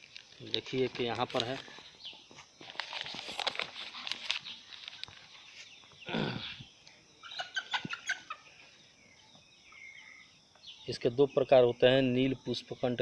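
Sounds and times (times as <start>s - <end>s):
rustling and clicking: 0.0s - 5.9s.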